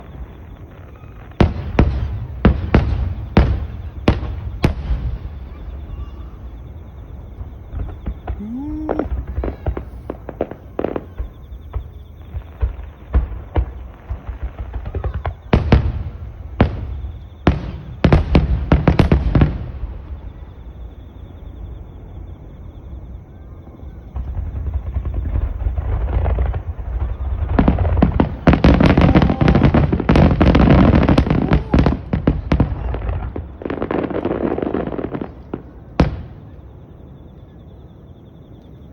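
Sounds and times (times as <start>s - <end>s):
fireworks bangs and booms: 0.0s - 38.9s
fireworks rapid crackling: 7.6s - 16.8s, 24.2s - 36.2s.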